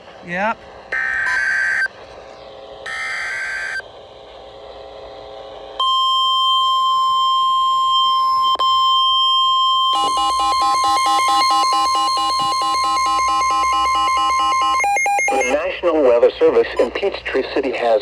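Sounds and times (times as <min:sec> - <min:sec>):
radio hiss: 0:00.0 - 0:05.8, 0:12.1 - 0:18.0
steady warning alarm tone: 0:00.9 - 0:02.0, 0:02.8 - 0:03.8, 0:05.8 - 0:16.0
rapid repeating beeps: 0:01.0 - 0:01.9, 0:09.9 - 0:15.6
warbling digital data burst: 0:01.0 - 0:01.9, 0:02.9 - 0:03.8, 0:10.0 - 0:15.6.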